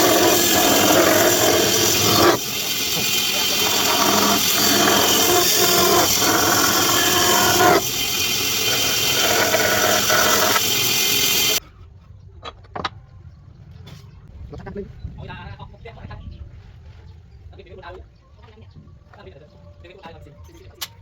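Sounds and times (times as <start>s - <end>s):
power tool cutting wood: 0.0s - 11.6s.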